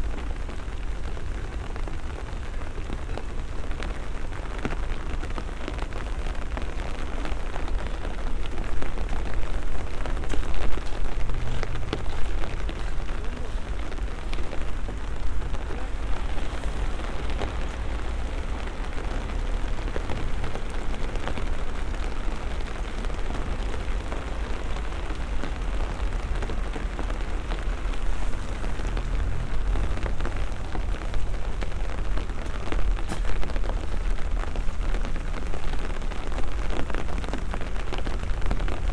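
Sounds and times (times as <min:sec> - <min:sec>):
steady rain falling: 0:00.0 - 0:38.9.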